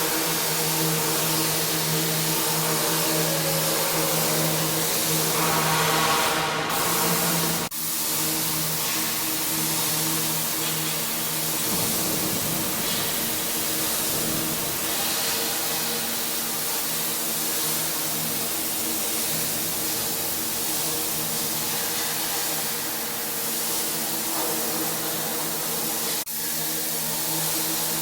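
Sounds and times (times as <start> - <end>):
high-pressure water spray hiss: 0.0 - 28.0
pressure washer engine hum: 10.9 - 22.7.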